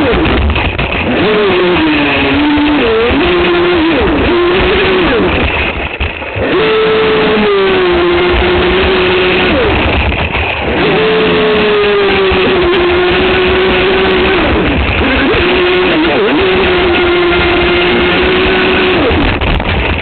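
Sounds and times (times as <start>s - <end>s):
electric motor whining: 0.0s - 20.0s
water rushing: 0.0s - 20.0s.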